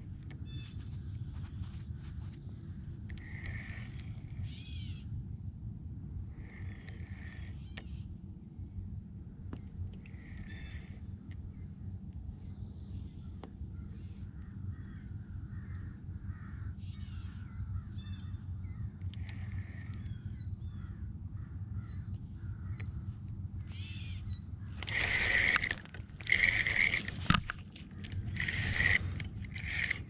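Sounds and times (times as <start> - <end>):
steady low rumble: 0.0 - 30.0
faint bird calls: 0.3 - 5.1, 6.3 - 8.8, 9.6 - 25.6
crows cawing: 16.3 - 18.0.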